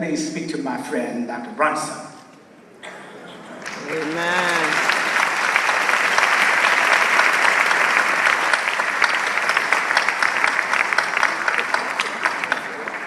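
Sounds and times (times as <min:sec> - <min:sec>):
large audience applauding: 0:03.6 - 0:13.0.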